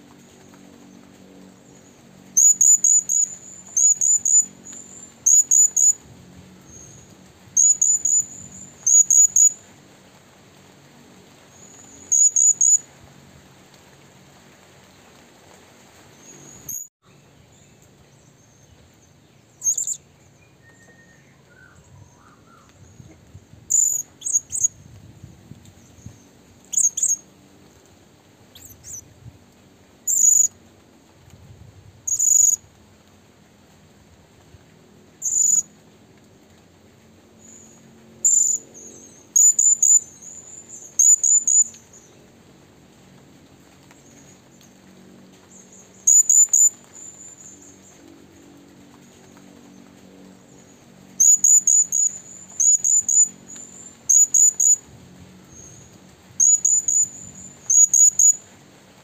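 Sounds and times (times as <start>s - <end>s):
high-pitched bird chirps: 2.4s - 6.0s, 7.6s - 9.6s, 11.6s - 12.8s, 16.7s - 16.9s, 19.6s - 20.0s, 23.7s - 24.7s, 26.7s - 27.2s, 28.6s - 29.0s, 30.1s - 30.5s, 32.1s - 32.6s, 35.2s - 35.6s, 39.4s - 41.7s, 46.1s - 47.4s, 51.2s - 53.3s, 54.1s - 54.8s, 56.4s - 58.4s.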